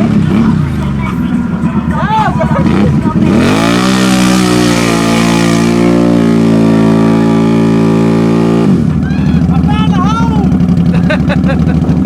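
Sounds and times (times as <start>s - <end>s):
off-road vehicle engine revving: 0.0s - 12.0s.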